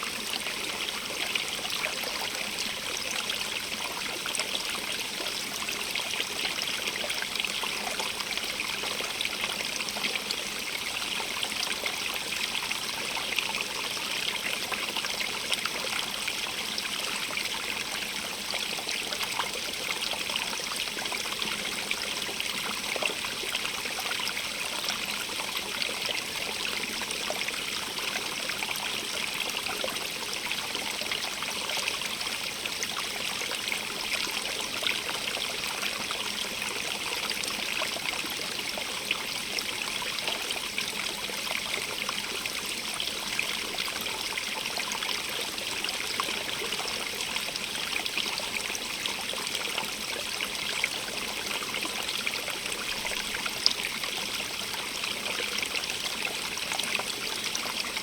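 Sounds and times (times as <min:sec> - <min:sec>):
stream trickling over stones: 0:00.0 - 0:58.0.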